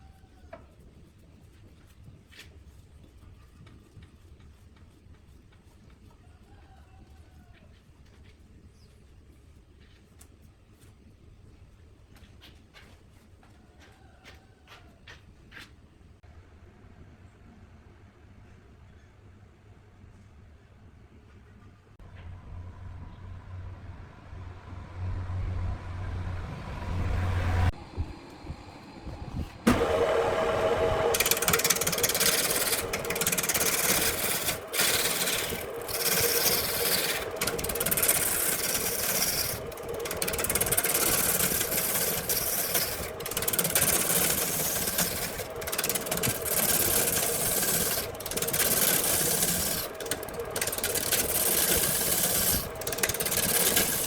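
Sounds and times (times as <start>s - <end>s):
wood lathe motor hum: 28.3s - 54.0s
turning tool rasping wood: 29.7s - 54.0s.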